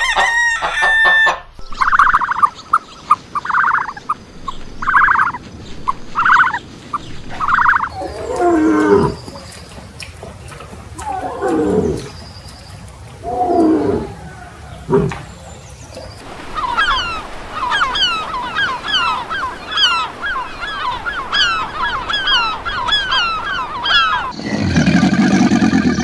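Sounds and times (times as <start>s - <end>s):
flock of birds calling: 0.0s - 2.3s, 16.2s - 24.4s
animal calls falling in pitch: 16.2s - 24.3s.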